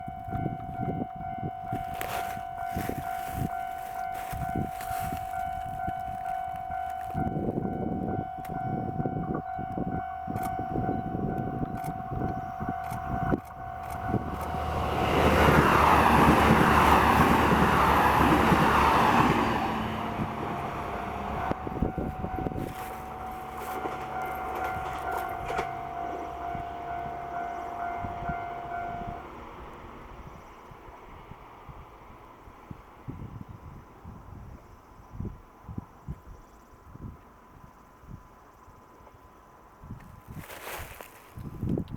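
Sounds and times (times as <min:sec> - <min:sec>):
level crossing bell ringing: 0:00.0 - 0:14.3, 0:21.3 - 0:29.0
train passing: 0:00.0 - 0:35.8.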